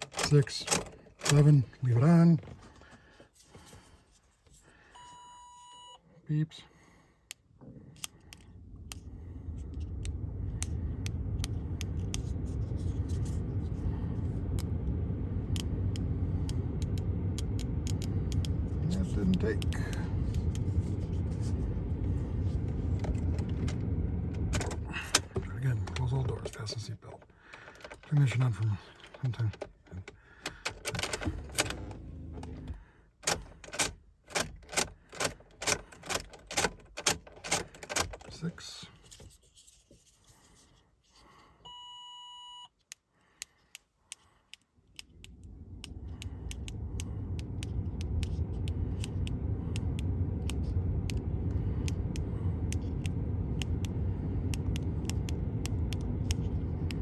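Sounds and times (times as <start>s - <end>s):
ignition switch clicks: 0.0s - 1.6s, 14.5s - 20.7s, 42.8s - 57.0s
low steady cabin rumble: 0.0s - 4.0s, 6.2s - 39.2s, 44.8s - 57.0s
low steady hum: 0.0s - 34.8s, 35.5s - 57.0s.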